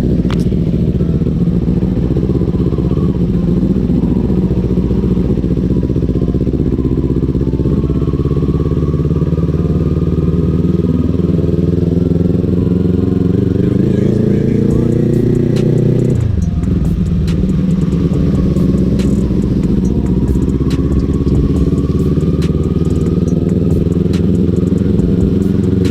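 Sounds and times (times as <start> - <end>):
motorcycle engine running: 0.0 - 25.9.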